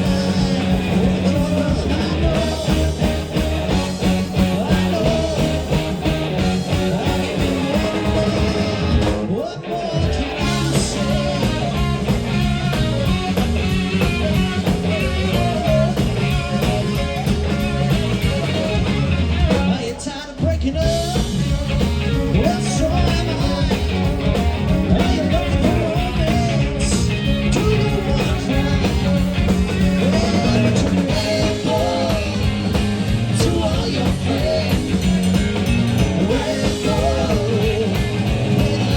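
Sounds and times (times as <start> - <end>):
lead singer vocals: 0.0 - 12.0, 22.3 - 24.2, 24.8 - 38.9
live rock band playing: 0.0 - 38.9.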